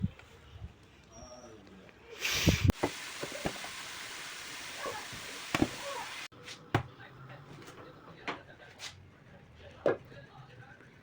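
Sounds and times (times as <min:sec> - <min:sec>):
steady hiss: 0:02.1 - 0:06.3.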